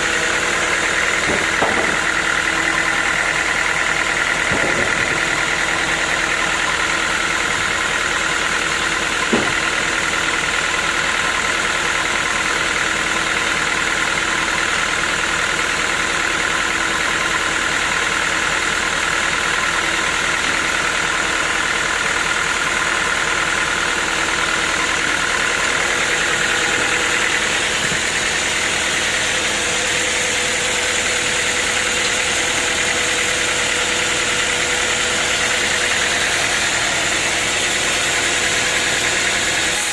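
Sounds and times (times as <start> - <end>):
sawmill machinery hum: 0.0 - 39.9
short knock: 9.3 - 9.7.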